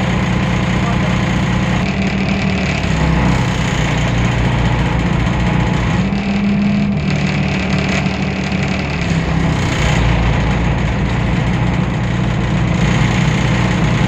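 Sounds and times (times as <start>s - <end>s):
bus diesel engine running: 0.0s - 14.0s.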